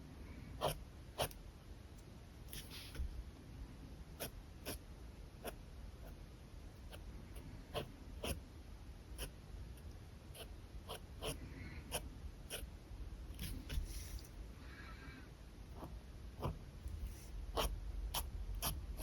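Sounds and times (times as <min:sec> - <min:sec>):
pen nib scratching paper: 0:00.6 - 0:01.4, 0:06.9 - 0:08.4, 0:10.3 - 0:12.7, 0:15.7 - 0:19.0.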